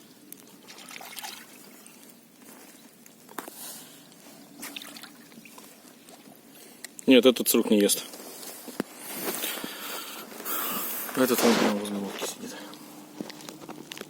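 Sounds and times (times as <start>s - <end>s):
water sloshing and dribbling: 0.3s - 3.3s, 4.2s - 6.5s
short splashes: 0.7s - 1.9s, 4.6s - 5.5s.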